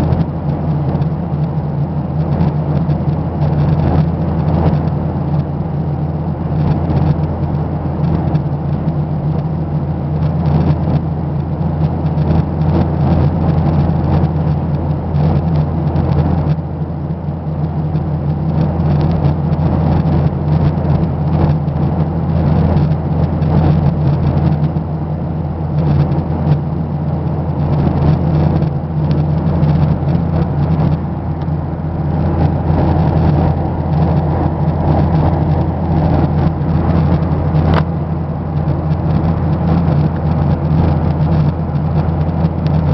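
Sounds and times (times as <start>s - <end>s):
vehicle engine and cabin rumble: 0.0s - 42.9s.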